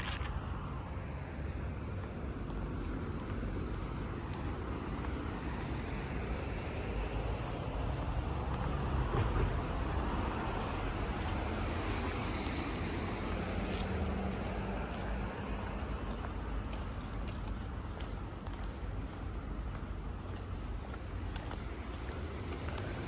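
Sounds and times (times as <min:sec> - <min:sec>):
cars passing: 0:00.1 - 0:23.0.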